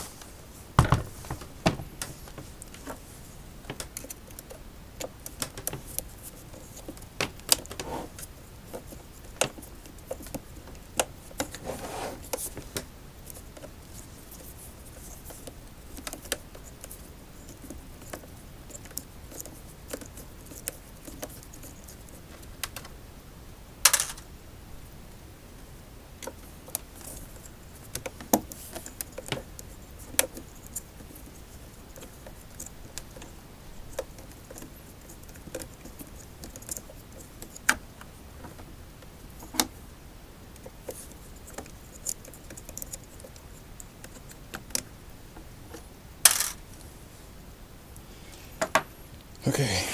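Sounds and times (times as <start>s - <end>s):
small metal parts clinking: 46.3s - 46.6s.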